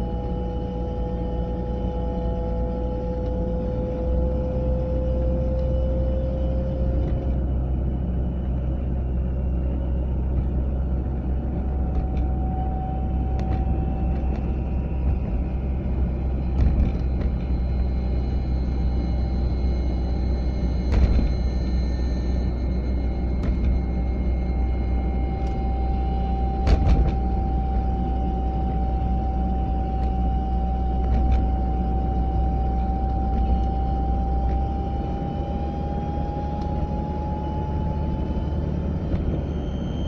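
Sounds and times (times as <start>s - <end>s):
car road and engine rumble: 0.0s - 40.0s.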